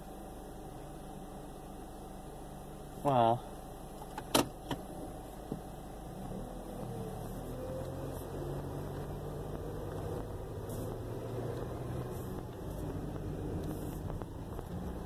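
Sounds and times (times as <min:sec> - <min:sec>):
car engine hum: 0:00.0 - 0:15.0
road noise: 0:03.0 - 0:15.0.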